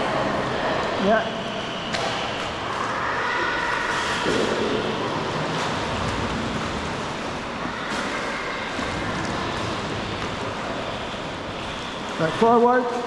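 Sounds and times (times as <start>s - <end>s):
sea water sloshing around kayaks: 0.0s - 13.0s.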